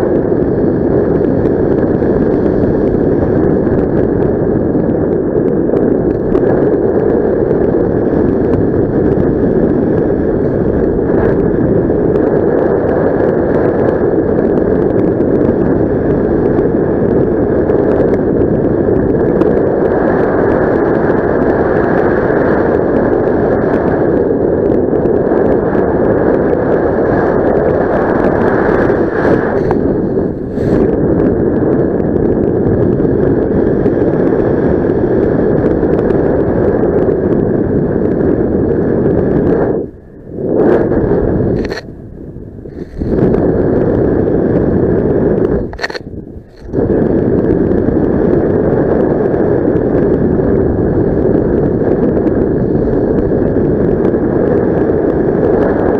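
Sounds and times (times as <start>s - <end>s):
wind rushing over microphone: 0.0s - 55.9s.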